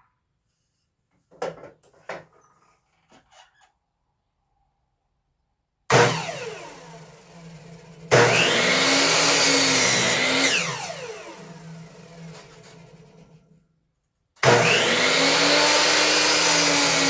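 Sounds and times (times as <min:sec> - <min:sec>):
electric miter saw cutting wood: 0:05.9 - 0:13.4, 0:14.4 - 0:17.0.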